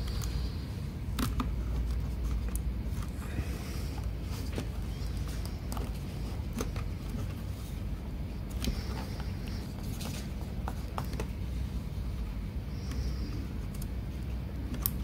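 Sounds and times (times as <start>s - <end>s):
low hum: 0.0s - 15.0s
laptop parts clicking: 1.1s - 3.1s, 13.6s - 15.0s.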